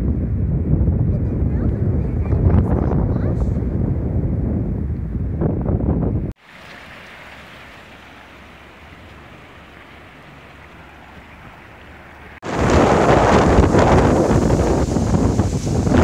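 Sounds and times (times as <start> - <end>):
wind buffeting microphone: 0.0 - 6.4, 8.7 - 16.0
steady rushing noise: 12.2 - 16.0
loud rough rushing noise: 12.3 - 16.0.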